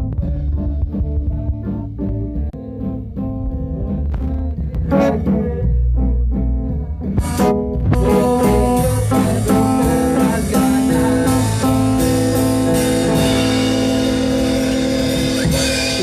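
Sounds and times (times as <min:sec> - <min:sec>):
live band playing: 0:00.0 - 0:16.0
drum hits: 0:06.6 - 0:16.0.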